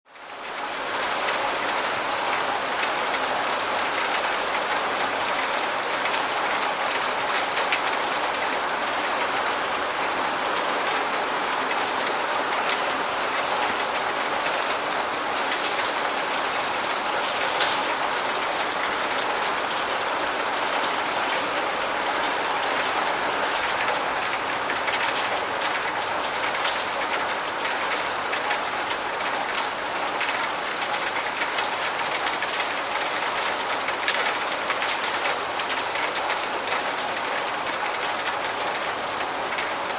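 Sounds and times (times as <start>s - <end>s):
rain falling: 0.1s - 39.9s
rain drop ticks: 11.6s - 39.9s.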